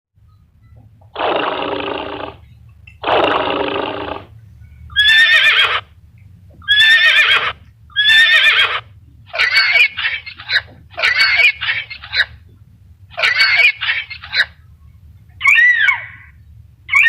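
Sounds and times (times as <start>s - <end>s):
horse whinnies: 1.2s - 2.4s, 3.0s - 4.3s, 5.0s - 5.9s, 6.7s - 8.9s
long rough animal calls: 1.2s - 2.4s, 3.0s - 4.3s.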